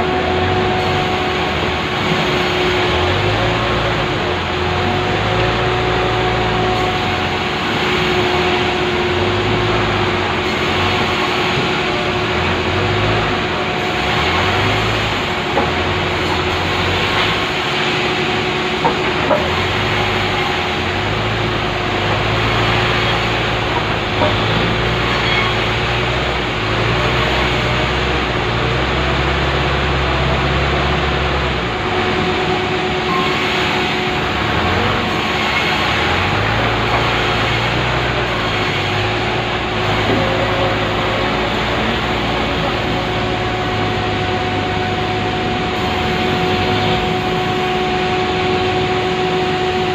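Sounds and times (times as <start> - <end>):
power saw cutting log: 0.0 - 49.9.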